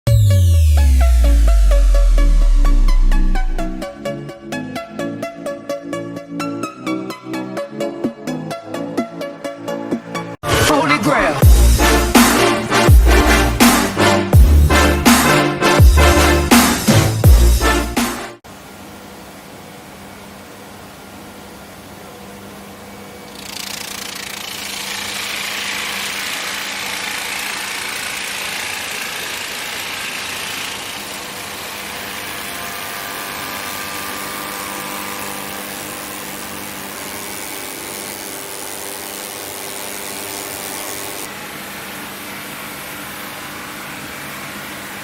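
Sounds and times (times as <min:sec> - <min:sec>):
machinery cutting timber: 0:23.3 - 0:41.3.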